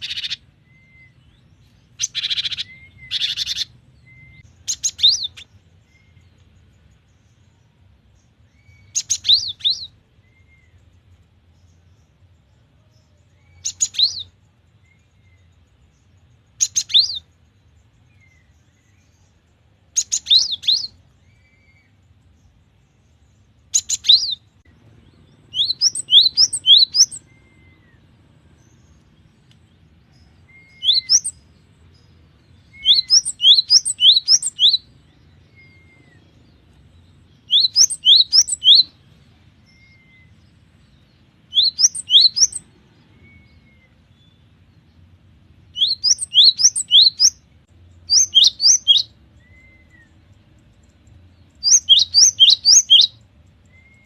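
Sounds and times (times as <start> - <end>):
bird singing high ringing notes: 25.3 - 28.1, 30.2 - 36.3, 37.4 - 39.0, 41.5 - 44.4, 48.0 - 50.1, 51.6 - 54.0.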